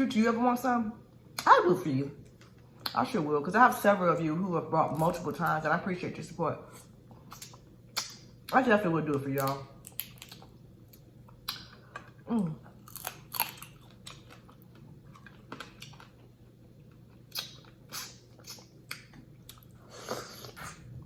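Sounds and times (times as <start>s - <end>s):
chewing and biting food: 9.8s - 19.8s.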